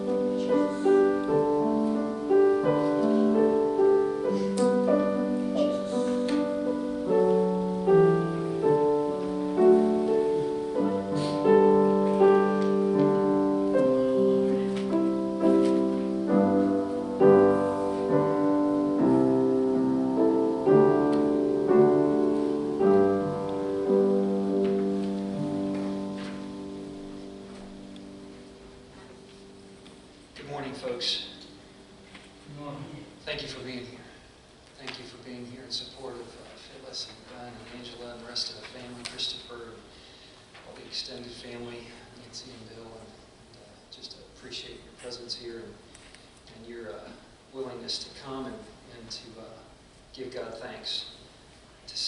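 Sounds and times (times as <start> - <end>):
slow gentle solo piano: 0.0 - 30.2.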